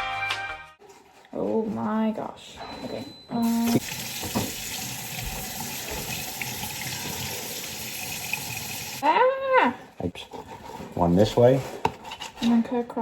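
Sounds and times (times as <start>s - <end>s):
tap running into sink: 3.4s - 9.0s.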